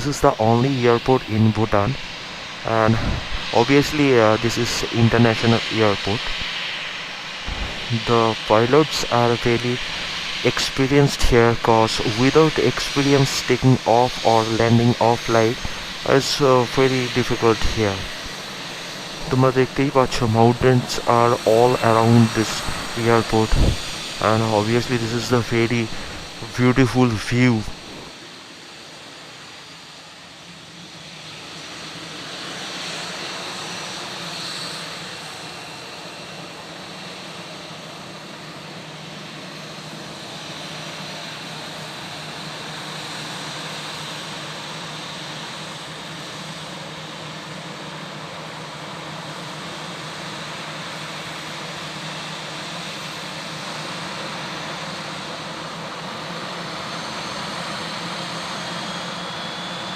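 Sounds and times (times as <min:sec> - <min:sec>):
high engine whine: 0:00.0 - 0:37.0
jet engines running: 0:00.0 - 0:59.9.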